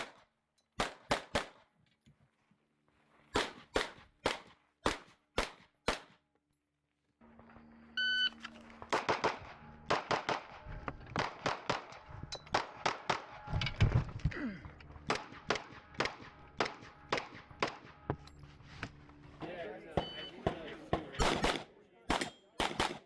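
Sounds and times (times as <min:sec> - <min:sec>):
rapid pistol fire: 0:00.8 - 0:01.6, 0:03.4 - 0:06.2, 0:08.9 - 0:10.6, 0:21.2 - 0:23.0.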